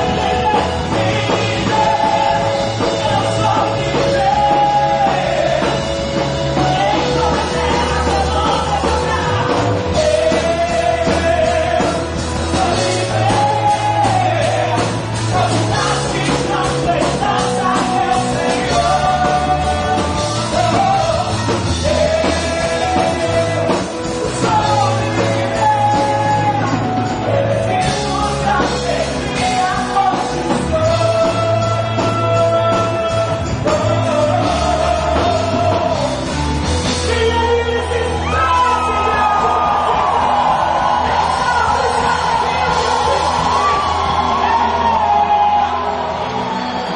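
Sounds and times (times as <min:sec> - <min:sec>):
worship singing with rock band: 0:00.0 - 0:46.9.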